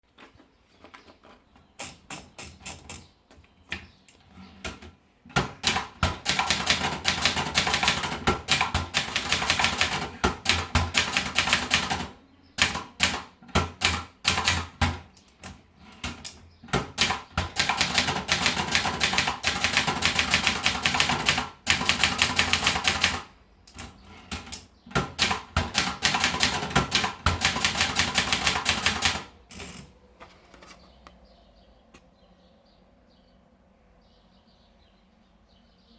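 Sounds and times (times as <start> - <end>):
typewriter keys clacking: 5.6 - 15.0, 16.0 - 29.9.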